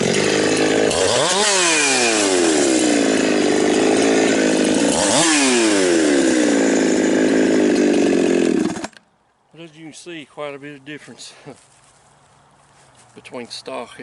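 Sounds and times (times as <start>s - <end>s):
chainsaw cutting wood: 0.0s - 9.1s.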